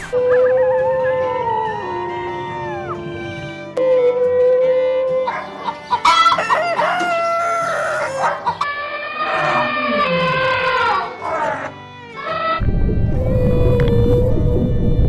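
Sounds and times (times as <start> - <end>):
rooster crowing: 0.2 - 3.7, 5.3 - 12.6.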